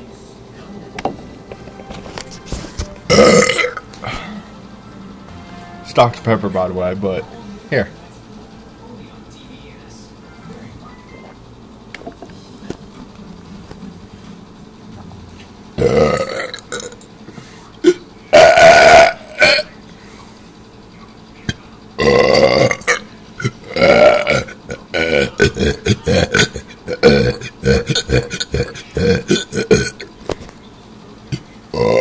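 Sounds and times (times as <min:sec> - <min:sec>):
man burping loudly: 0:03.1 - 0:04.2, 0:15.8 - 0:17.1, 0:17.8 - 0:19.7, 0:22.0 - 0:30.1, 0:31.7 - 0:32.0.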